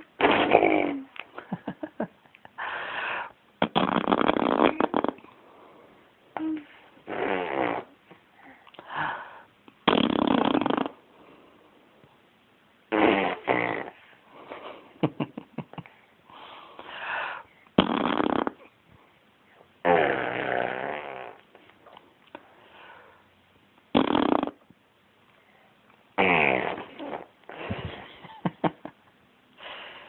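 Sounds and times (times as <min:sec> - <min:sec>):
person making rasping snore-like noises: 0:03.6 - 0:05.3, 0:09.8 - 0:11.0, 0:13.0 - 0:14.0, 0:17.8 - 0:18.7.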